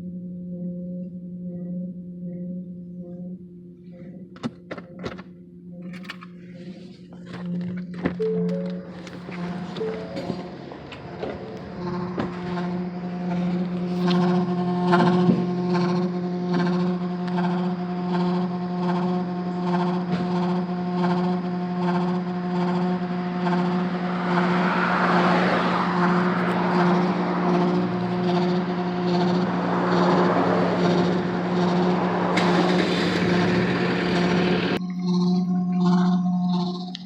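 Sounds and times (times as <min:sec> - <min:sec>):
steady low hum: 0:00.0 - 0:37.0
regular ticking: 0:07.1 - 0:35.0.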